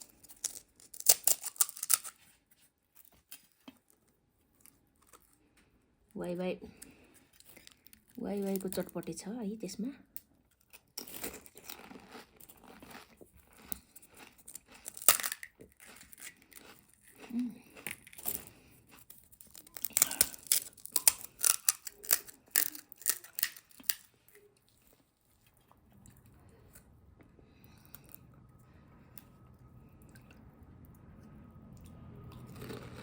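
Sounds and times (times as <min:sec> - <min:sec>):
crunching snack food: 0:00.0 - 0:02.4, 0:10.5 - 0:26.9, 0:31.8 - 0:33.0
snack packaging crinkling: 0:00.0 - 0:05.5, 0:07.3 - 0:09.0, 0:10.5 - 0:25.8.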